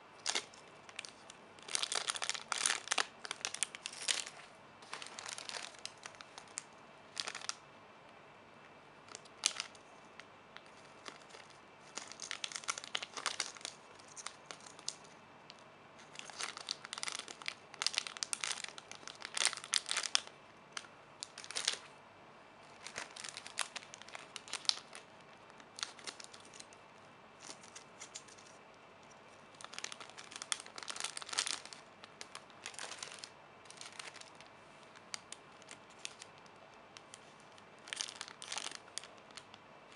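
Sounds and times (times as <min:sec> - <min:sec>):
plastic crinkling: 0:00.2 - 0:07.6, 0:09.0 - 0:21.9, 0:22.6 - 0:39.9.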